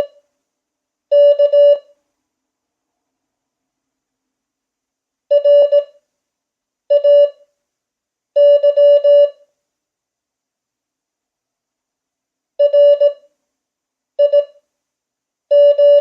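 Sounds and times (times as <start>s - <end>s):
morse code tone: 1.1s - 1.9s, 5.3s - 5.9s, 6.9s - 7.4s, 8.4s - 9.4s, 12.6s - 13.2s, 15.5s - 16.0s.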